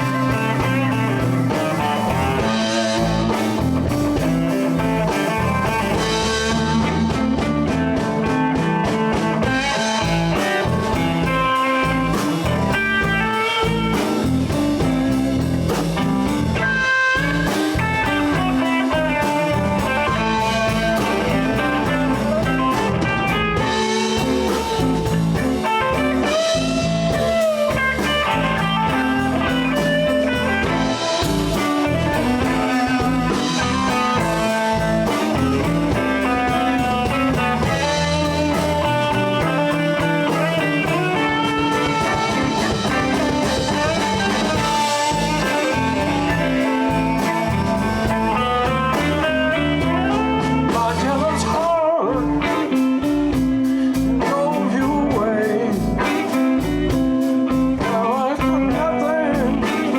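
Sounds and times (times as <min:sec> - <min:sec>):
bass: 0:00.0 - 0:59.9
blues guitar: 0:00.0 - 0:59.9
drums: 0:00.0 - 0:59.9.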